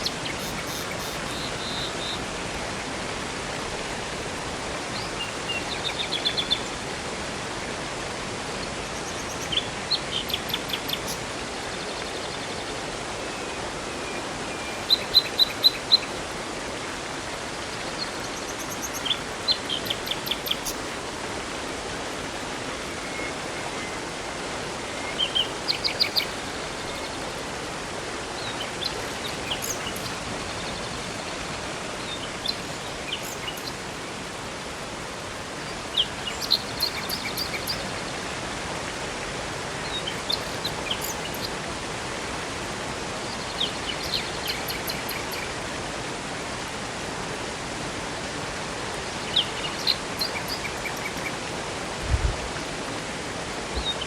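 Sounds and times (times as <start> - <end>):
songbirds chirping: 0.0 - 6.8, 8.5 - 41.6, 43.1 - 45.6, 49.0 - 51.6
river rushing: 0.0 - 54.0.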